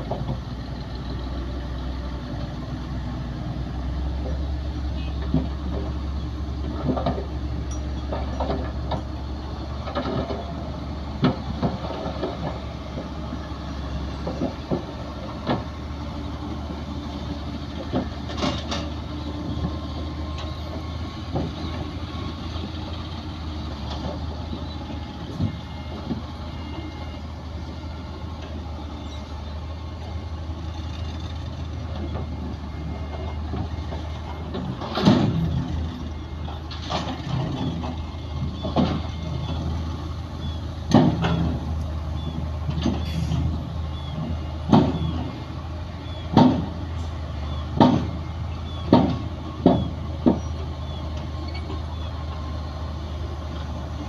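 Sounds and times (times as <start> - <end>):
diesel machinery droning: 0.0 - 54.0
metallic clanks and knocks: 6.6 - 10.5, 17.8 - 21.8, 33.1 - 35.7, 40.9 - 43.5, 44.2 - 45.3, 46.3 - 46.8, 47.7 - 50.6.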